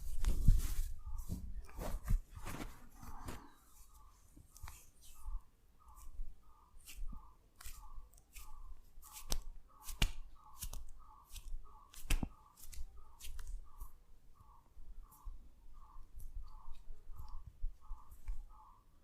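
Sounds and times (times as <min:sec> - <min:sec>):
hands rubbing skin: 0:00.0 - 0:14.0
faint repeating squeak: 0:03.1 - 0:19.0
hand slaps on skin: 0:09.2 - 0:13.5.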